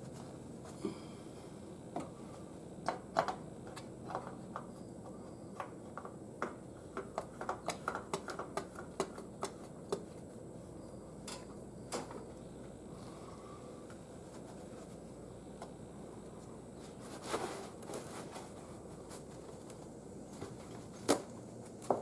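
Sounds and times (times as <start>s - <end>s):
small parts clicking and tapping: 2.8s - 10.2s.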